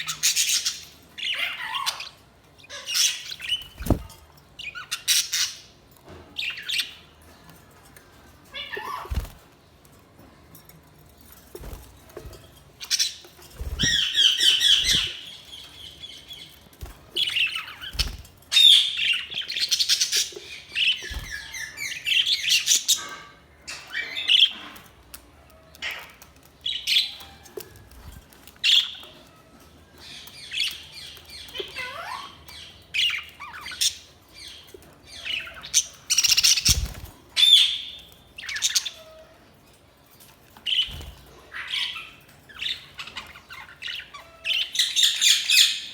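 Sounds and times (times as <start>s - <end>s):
budgerigars chirping: 12.9s - 15.8s.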